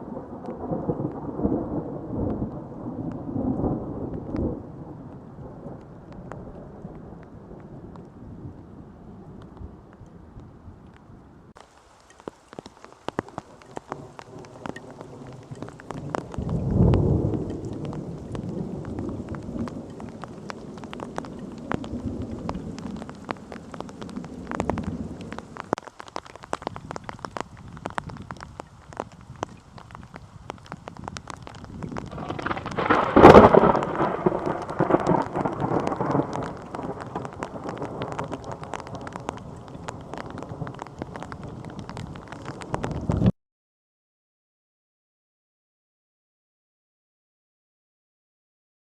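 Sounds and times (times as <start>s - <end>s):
heavy raindrops tapping: 0.0s - 8.2s, 11.6s - 43.3s
rolling thunder: 0.0s - 9.8s, 13.6s - 25.4s, 30.6s - 43.3s.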